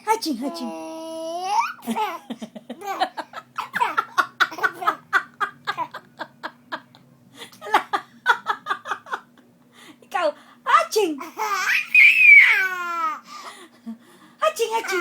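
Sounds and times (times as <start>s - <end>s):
young child laughing: 1.6s - 6.2s.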